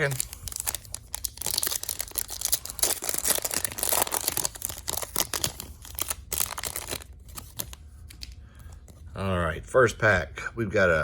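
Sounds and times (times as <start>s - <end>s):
wrapper tearing and crinkling: 0.0s - 7.8s.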